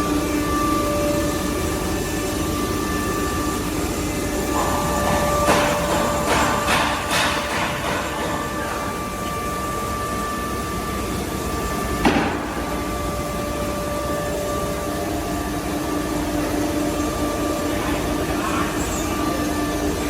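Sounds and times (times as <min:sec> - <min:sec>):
high steady whine: 0:00.0 - 0:20.0
sharp knock: 0:12.0 - 0:12.6.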